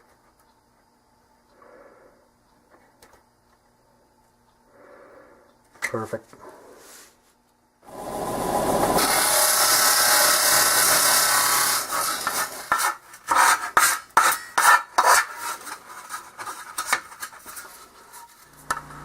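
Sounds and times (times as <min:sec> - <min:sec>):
file rasping on metal: 0:09.0 - 0:16.8.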